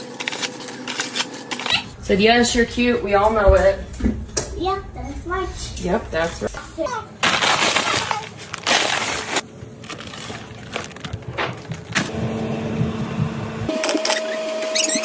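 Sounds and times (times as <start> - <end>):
steady low hum: 0.0 - 14.0
crinkling crunching noise: 7.2 - 12.1.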